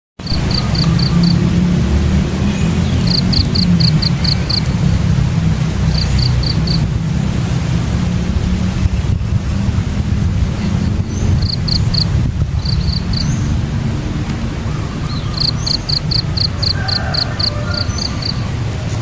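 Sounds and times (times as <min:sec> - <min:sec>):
bird chirping: 0:00.2 - 0:01.4, 0:02.4 - 0:04.7, 0:10.8 - 0:13.6, 0:14.7 - 0:19.0.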